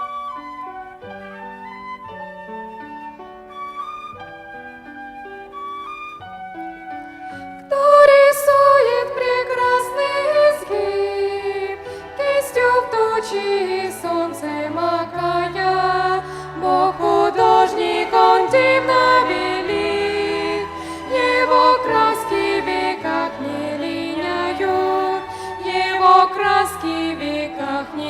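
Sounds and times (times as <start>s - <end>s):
violins: 7.7s - 28.0s
vocal ensemble singing: 7.7s - 28.0s.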